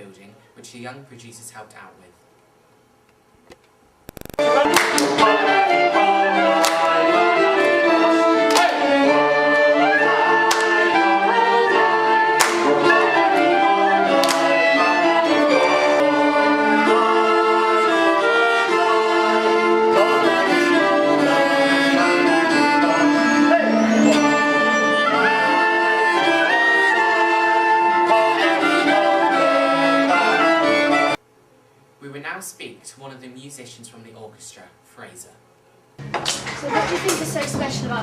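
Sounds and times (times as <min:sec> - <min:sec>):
orchestral strings: 0:04.4 - 0:31.2.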